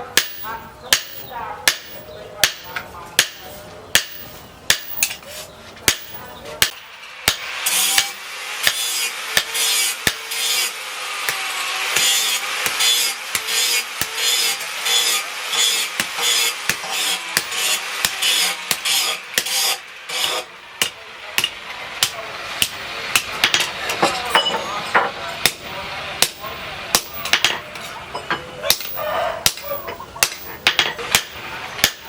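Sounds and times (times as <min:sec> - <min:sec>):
hammer striking steel: 0:00.0 - 0:05.2, 0:05.8 - 0:32.0.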